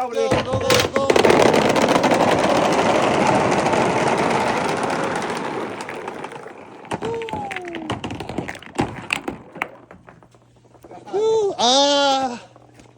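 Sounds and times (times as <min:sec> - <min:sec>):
marbles rattling down a track: 0:00.5 - 0:10.8.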